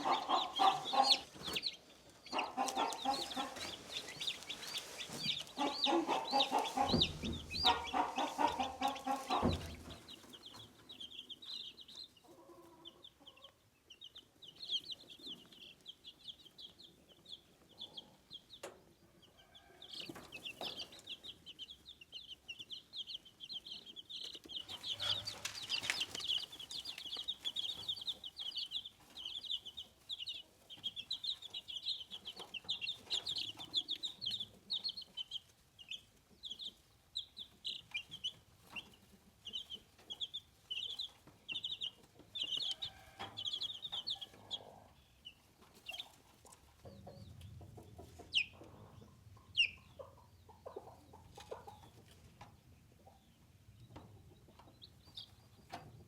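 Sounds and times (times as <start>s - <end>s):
chicks peeping: 0.0s - 56.0s
rustling: 3.2s - 5.8s, 24.6s - 28.2s.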